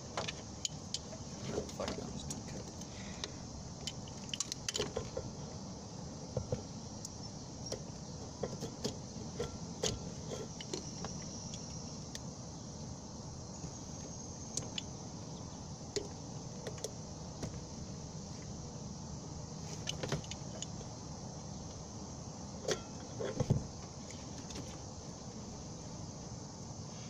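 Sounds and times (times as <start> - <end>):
low background noise: 0.0 - 27.0.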